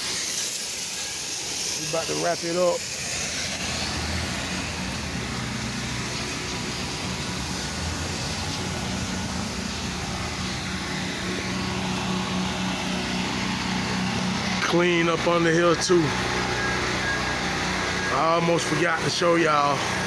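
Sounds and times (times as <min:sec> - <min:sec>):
even hiss: 0:00.0 - 0:13.4
pressure washer engine running: 0:00.0 - 0:20.0.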